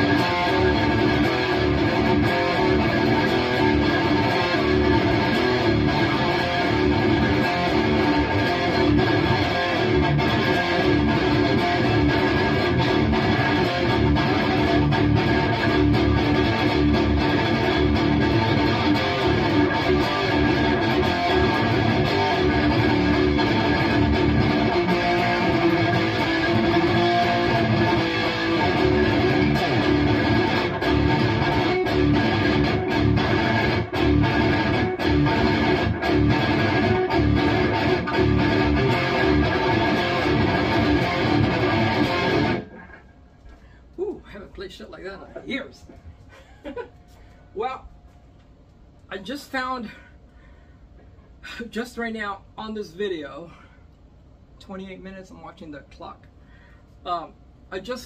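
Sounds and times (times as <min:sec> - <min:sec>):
distorted electric guitar riffing: 0:00.0 - 0:43.8.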